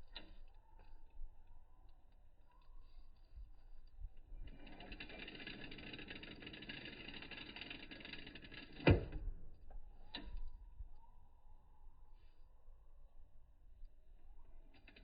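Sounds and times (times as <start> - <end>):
rapid mechanical rattling: 4.2 - 9.2.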